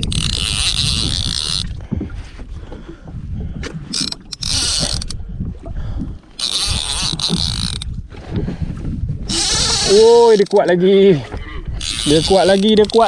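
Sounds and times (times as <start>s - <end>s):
fishing reel drag screaming: 0.0s - 1.7s, 3.9s - 5.2s, 6.4s - 7.8s, 9.3s - 10.7s, 11.8s - 13.0s
water rumbling: 0.0s - 13.0s
wind on microphone: 0.0s - 13.0s.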